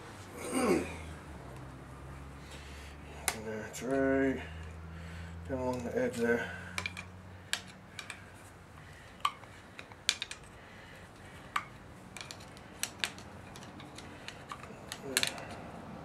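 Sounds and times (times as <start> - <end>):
metal tools clinking on engine: 5.5 - 8.3, 9.1 - 15.7.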